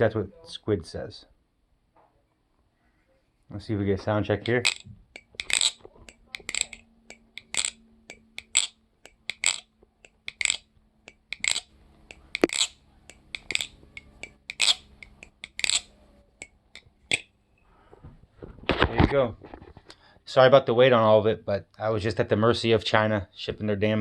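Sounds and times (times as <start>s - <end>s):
butterfly knife metallic clacks: 4.4s - 17.3s.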